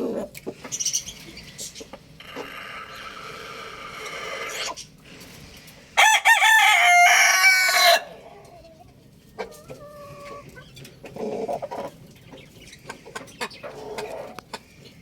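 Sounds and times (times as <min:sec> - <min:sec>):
rooster crowing: 0:06.0 - 0:08.2.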